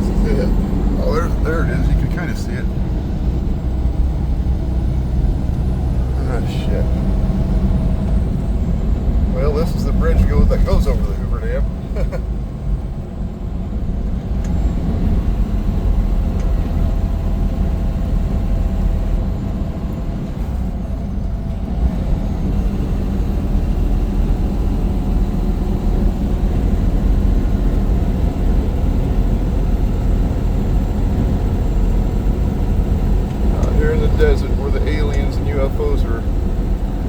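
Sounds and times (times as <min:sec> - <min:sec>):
car driving at speed: 0:00.0 - 0:37.0.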